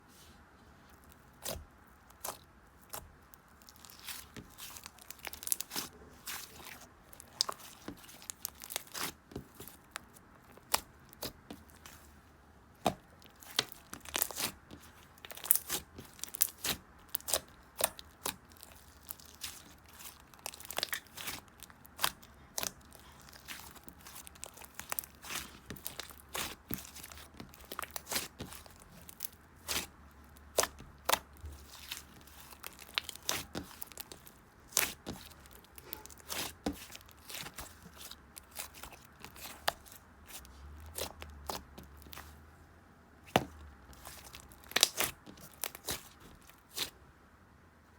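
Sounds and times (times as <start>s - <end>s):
sharp crackles and tearing: 3.6s - 11.9s, 13.2s - 42.3s, 43.9s - 46.9s.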